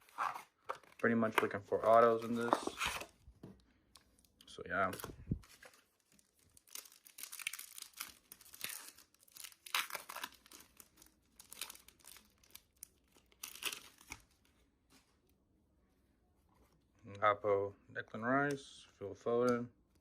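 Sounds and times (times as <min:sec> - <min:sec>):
packaging tearing and crinkling: 0:05.0 - 0:14.4.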